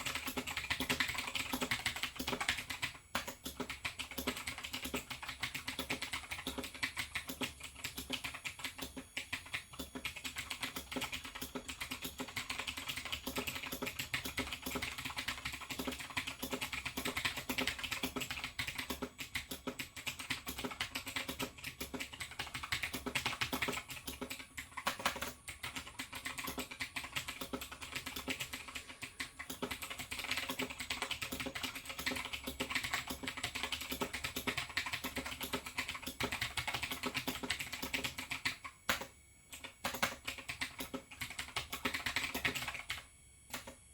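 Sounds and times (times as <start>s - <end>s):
clicky mechanical keyboard typing: 0.0s - 43.8s.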